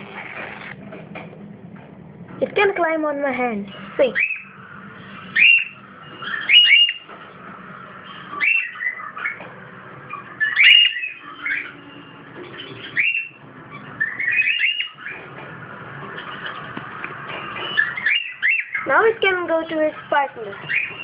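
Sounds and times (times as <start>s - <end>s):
cockatiel chirping: 4.0s - 7.1s, 8.1s - 9.4s, 10.1s - 15.2s, 17.5s - 19.0s, 20.5s - 21.0s.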